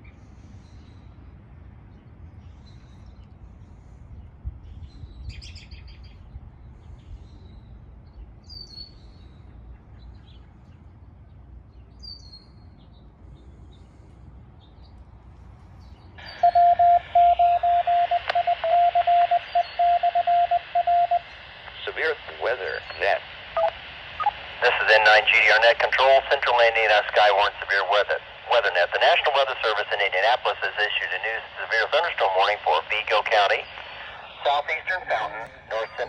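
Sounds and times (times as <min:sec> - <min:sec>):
bird chirps: 0:15.8 - 0:17.7, 0:19.3 - 0:20.2
two-way radio hiss: 0:16.2 - 0:36.0
fast on-off beep tone: 0:16.3 - 0:21.2.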